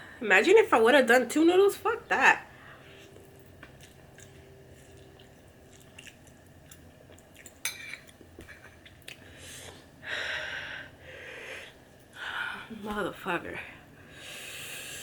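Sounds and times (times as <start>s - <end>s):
chewing: 3.0s - 9.8s.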